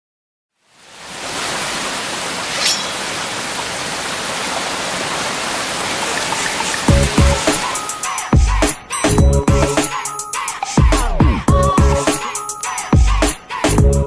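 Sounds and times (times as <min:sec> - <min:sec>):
steady hiss: 0:00.7 - 0:08.3
bright swish: 0:02.3 - 0:03.6.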